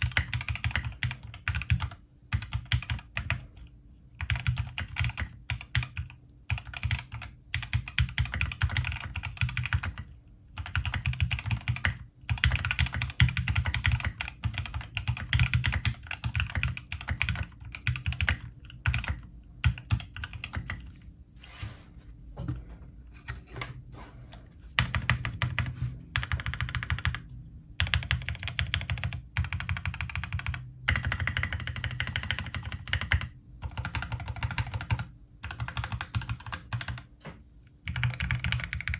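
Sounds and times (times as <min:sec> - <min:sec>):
mechanical keyboard keys clacking: 0:24.8 - 0:27.2, 0:27.8 - 0:37.1, 0:37.9 - 0:38.9.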